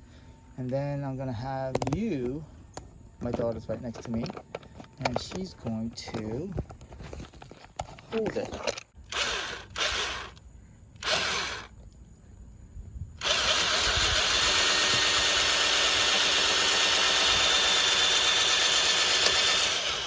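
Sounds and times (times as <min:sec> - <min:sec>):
electric drill whining: 0:09.0 - 0:10.4, 0:11.0 - 0:11.7, 0:13.2 - 0:20.0.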